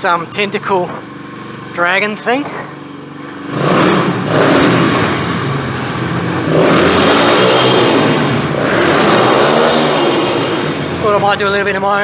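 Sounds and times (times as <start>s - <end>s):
motorbike engine revving: 0.0s - 12.0s.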